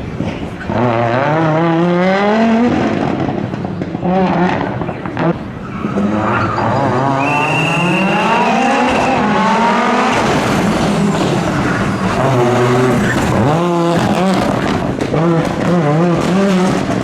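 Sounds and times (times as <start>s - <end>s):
rally car engine revving: 0.0s - 17.0s.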